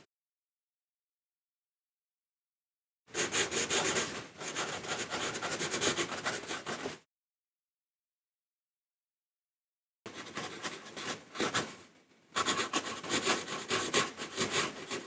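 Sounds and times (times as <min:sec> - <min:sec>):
pen scratching on paper: 0:03.2 - 0:07.0, 0:12.4 - 0:15.0.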